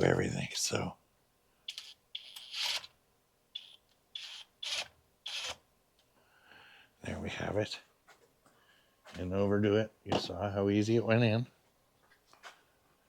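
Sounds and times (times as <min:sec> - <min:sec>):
tool rasping bolt in: 0:01.7 - 0:02.9, 0:03.6 - 0:05.6.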